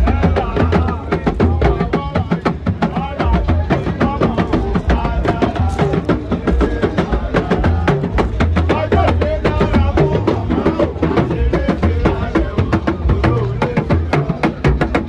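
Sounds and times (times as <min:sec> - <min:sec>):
fast drum beat: 0:00.0 - 0:15.0.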